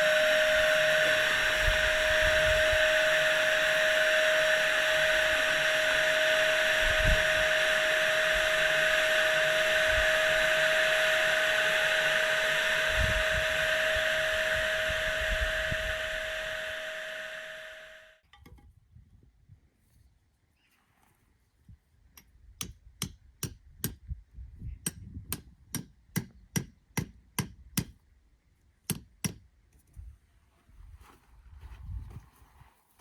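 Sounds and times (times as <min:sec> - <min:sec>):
electric air pump whining: 0:00.0 - 0:18.1.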